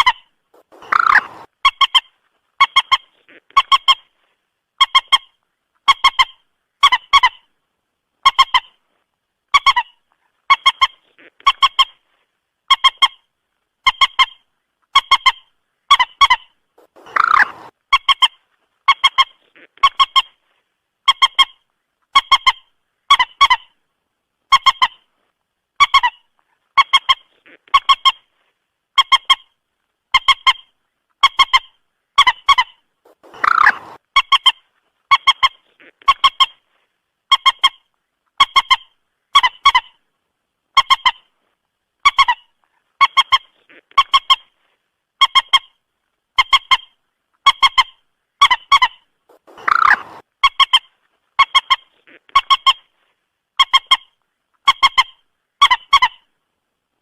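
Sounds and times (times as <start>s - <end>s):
moorhen calling: 0.0s - 4.1s, 13.8s - 20.4s, 30.1s - 36.7s, 46.4s - 52.9s.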